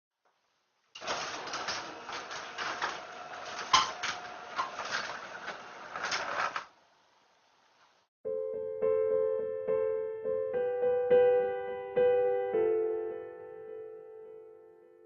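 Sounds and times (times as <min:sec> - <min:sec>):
piano music: 0:08.2 - 0:15.0.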